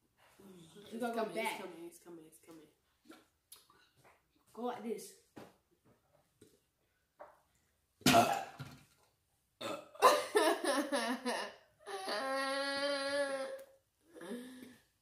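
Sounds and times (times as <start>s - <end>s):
child burping: 8.1s - 8.6s, 9.6s - 14.7s.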